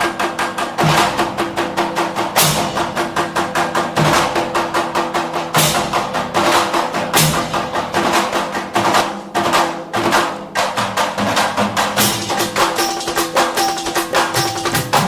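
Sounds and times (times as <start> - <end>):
deep beat: 0.0 - 15.0
fast percussion pattern: 0.0 - 15.0.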